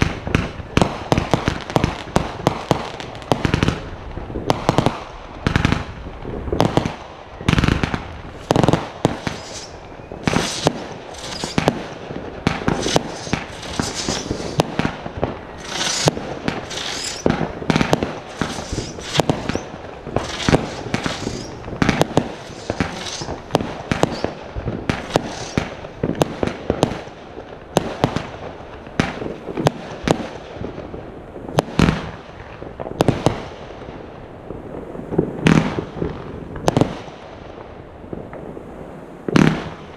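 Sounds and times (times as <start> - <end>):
fireworks hissing: 0.0 - 26.8
fireworks bangs and booms: 0.0 - 39.9.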